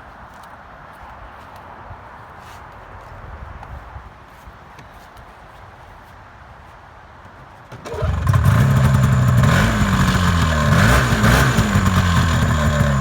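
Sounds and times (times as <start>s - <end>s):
snowmobile engine pull-started: 7.8s - 13.0s
snowmobile engine revving: 7.9s - 13.0s.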